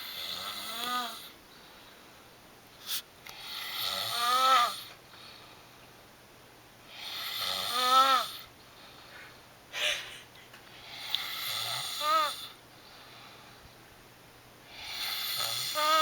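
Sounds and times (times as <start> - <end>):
person snoring: 3.4 - 4.9, 6.9 - 8.5, 10.8 - 12.6, 14.7 - 16.0.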